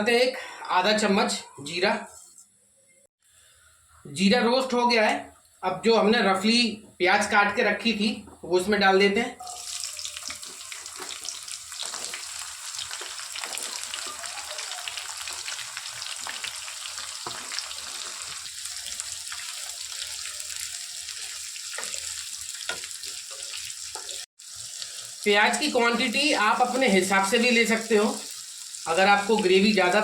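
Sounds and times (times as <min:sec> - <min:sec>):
onions sizzling in hot oil: 0:09.4 - 0:30.0.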